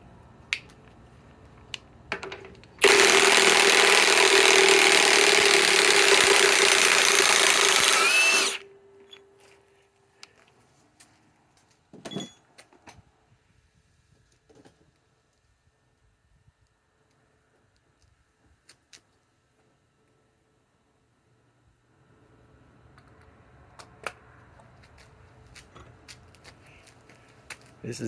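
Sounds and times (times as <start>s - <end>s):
impact wrench hammering: 2.8s - 8.6s.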